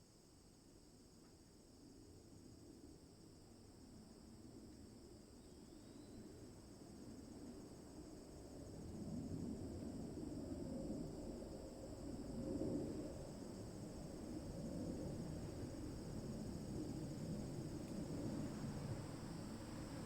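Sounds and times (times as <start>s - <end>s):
insects chirring: 15.1s - 20.0s.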